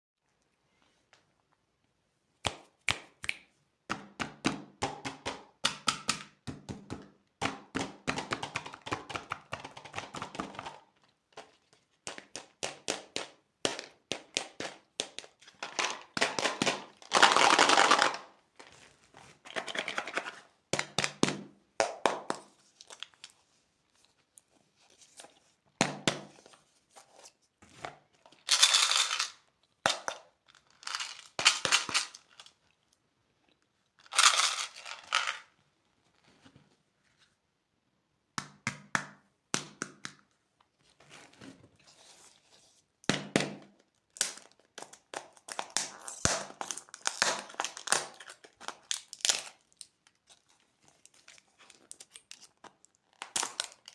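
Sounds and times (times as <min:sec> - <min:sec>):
plastic packaging ripping: 0:44.1 - 0:53.9.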